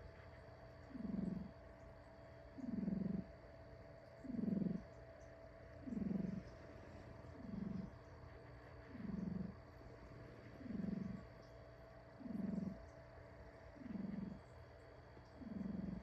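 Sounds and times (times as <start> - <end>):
cat snoring: 0.9 - 1.5, 2.5 - 3.4, 4.2 - 4.9, 5.7 - 8.0, 8.8 - 11.4, 12.2 - 14.5, 15.2 - 16.0.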